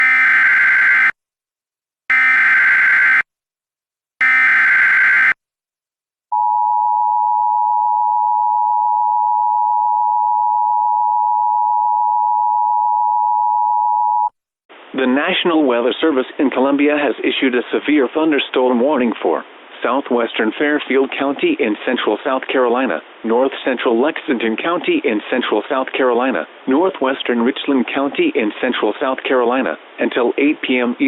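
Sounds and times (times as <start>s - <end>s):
steady attention signal tone: 6.3s - 14.3s.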